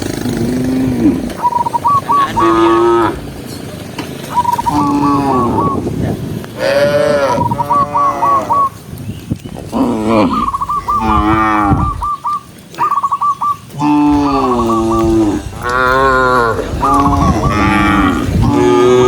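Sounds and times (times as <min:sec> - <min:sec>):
cows mooing: 0:00.0 - 0:03.5, 0:04.4 - 0:05.9, 0:06.6 - 0:08.7, 0:09.7 - 0:12.1, 0:13.7 - 0:19.0.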